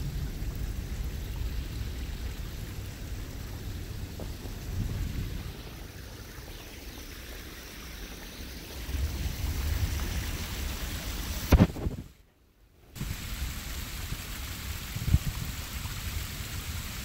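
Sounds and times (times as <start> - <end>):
strong wind on microphone: 0.0 - 5.8, 8.8 - 12.2, 14.0 - 16.8.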